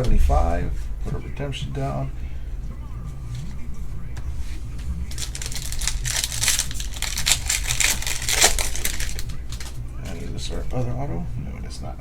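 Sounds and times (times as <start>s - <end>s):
card packaging crinkling: 5.0s - 10.8s.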